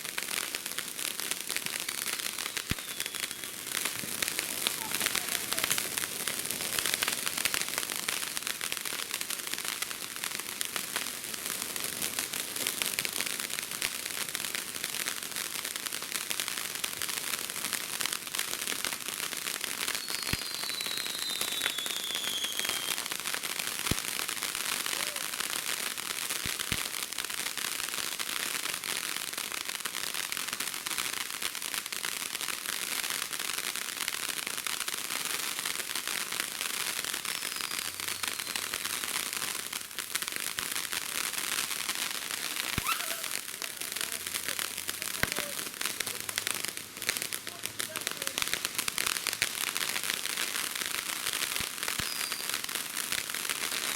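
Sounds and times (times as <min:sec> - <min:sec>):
fireworks crackling: 0:00.0 - 0:53.9
falling whistle: 0:02.4 - 0:03.6, 0:20.0 - 0:23.0, 0:37.3 - 0:38.7, 0:42.8 - 0:43.4.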